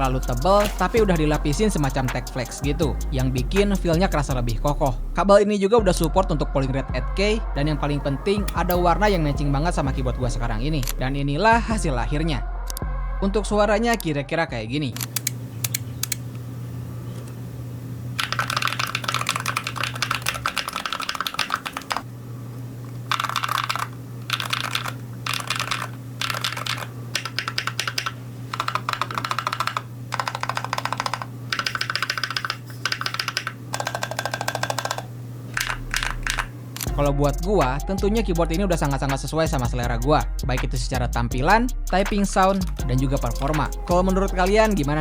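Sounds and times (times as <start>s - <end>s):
keyboard keys clacking: 0.0s - 5.0s, 7.6s - 11.2s, 18.2s - 22.1s, 23.0s - 37.0s, 42.4s - 45.0s.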